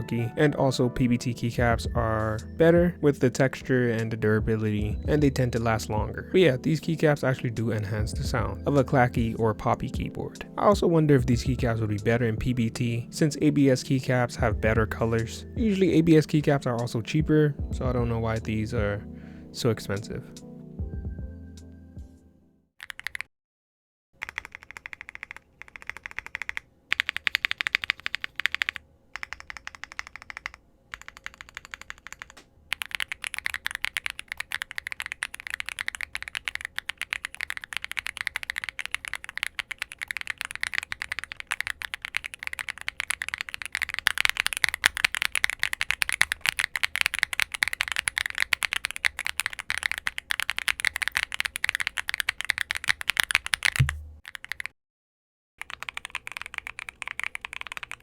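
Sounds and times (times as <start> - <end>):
mechanical keyboard typing: 22.8 - 23.3, 24.2 - 54.7, 55.6 - 58.0.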